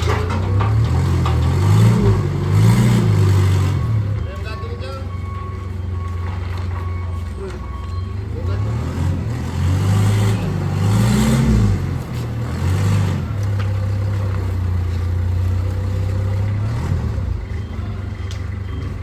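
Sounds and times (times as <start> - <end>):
vehicle engine revving: 0.0 - 4.2, 8.2 - 19.0.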